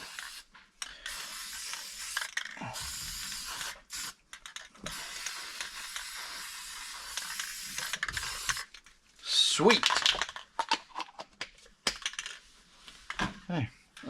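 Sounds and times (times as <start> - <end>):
aerosol can spraying: 0.0 - 0.5, 1.1 - 4.2, 4.8 - 8.7.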